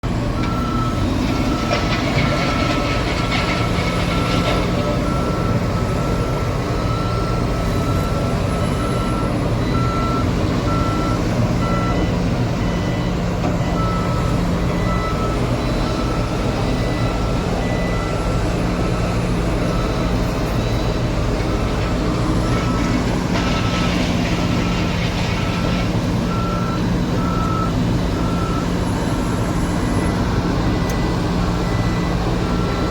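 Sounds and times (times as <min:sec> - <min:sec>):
diesel engine running: 0:00.0 - 0:32.9
reversing alarm beeping: 0:00.4 - 0:32.9.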